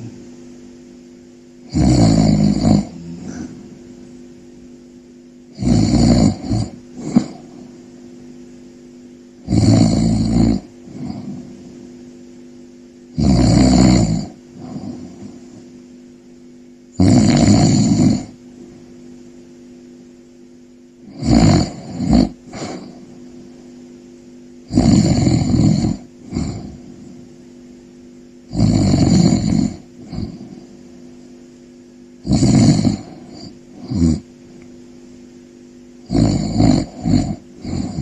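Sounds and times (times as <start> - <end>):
loud snoring: 1.6 - 3.8, 5.5 - 7.7, 9.4 - 11.7, 13.1 - 15.7, 16.9 - 18.4, 21.0 - 23.2, 24.7 - 27.3, 28.5 - 30.8, 32.2 - 34.3, 36.0 - 38.0
soft breath: 2.9 - 3.8.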